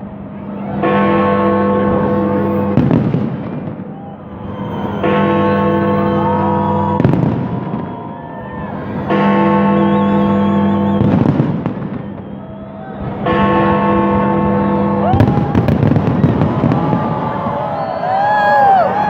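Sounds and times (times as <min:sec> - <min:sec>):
fireworks exploding: 0:02.8 - 0:04.1, 0:07.0 - 0:09.0, 0:10.9 - 0:13.2, 0:15.1 - 0:17.9.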